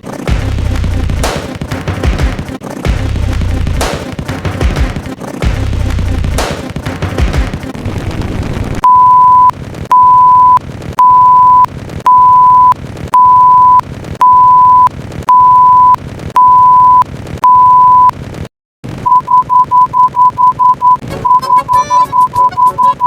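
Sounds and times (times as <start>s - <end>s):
noise: 0.0s - 23.0s
loud electronic beeps: 8.8s - 18.1s, 19.0s - 23.0s.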